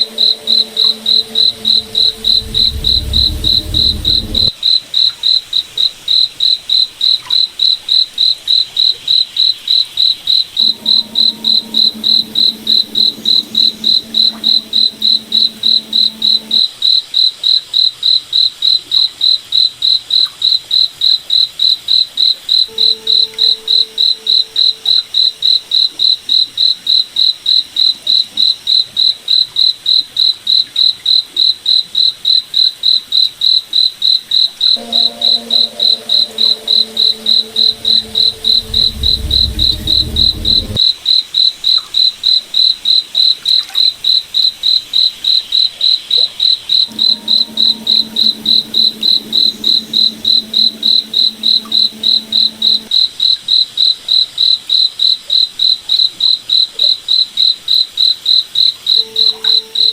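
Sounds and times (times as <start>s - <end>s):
faint low hum: 0.0s - 4.5s, 10.6s - 16.6s, 34.8s - 40.8s, 46.9s - 52.9s
cricket chirping: 0.0s - 4.8s, 6.1s - 17.0s, 19.2s - 40.9s, 44.1s - 53.0s.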